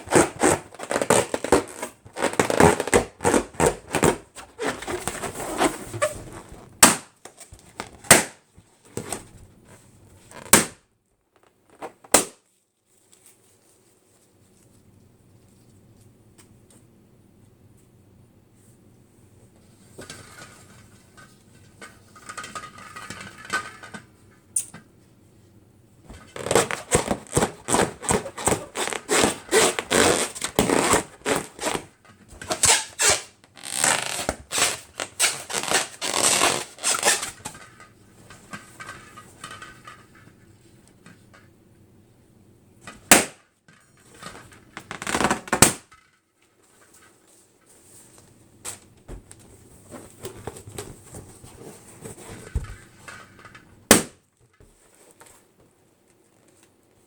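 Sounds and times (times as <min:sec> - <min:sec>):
balloon popping: 0:00.0 - 0:07.1, 0:07.9 - 0:08.4, 0:10.3 - 0:10.8, 0:12.1 - 0:12.4, 0:26.2 - 0:31.9, 0:32.5 - 0:37.3, 0:43.1 - 0:43.4, 0:44.8 - 0:45.8, 0:53.9 - 0:54.2
balloons crackling and squeaking: 0:00.0 - 0:08.4, 0:09.0 - 0:10.8, 0:26.1 - 0:37.5, 0:44.7 - 0:45.9.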